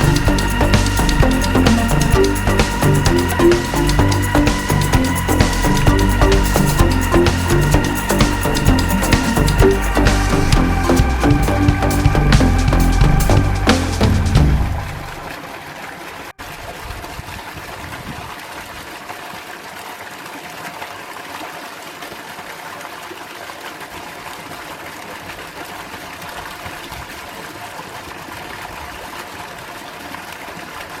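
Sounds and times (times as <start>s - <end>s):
music: 0.0s - 15.1s
steady rushing noise with tones: 0.0s - 15.3s.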